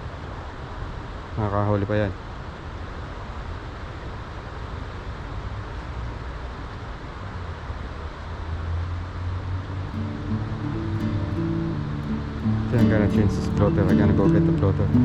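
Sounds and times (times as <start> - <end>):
rushing background noise: 2.3 - 15.0.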